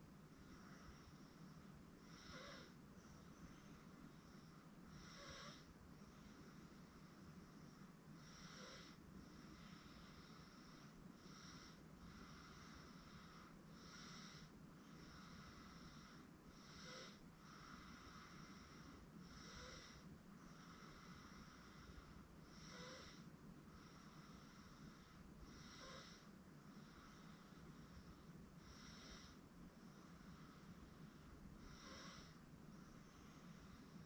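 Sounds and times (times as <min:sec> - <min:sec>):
steady background hiss: 0:00.0 - 0:34.0.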